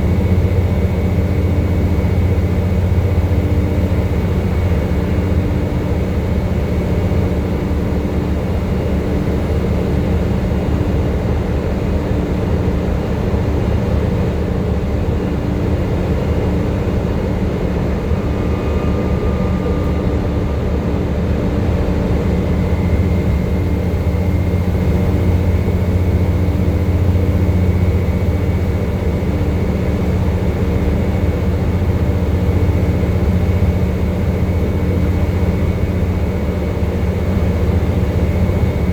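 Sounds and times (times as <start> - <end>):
bus diesel engine running: 0.0 - 38.9
faint high whine: 15.1 - 38.9.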